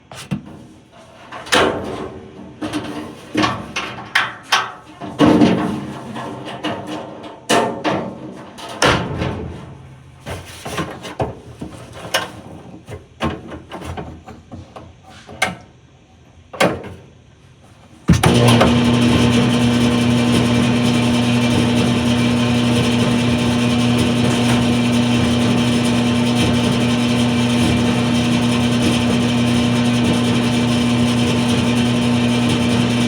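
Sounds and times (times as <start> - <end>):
knocks and clatters of dryer: 18.1 - 33.0.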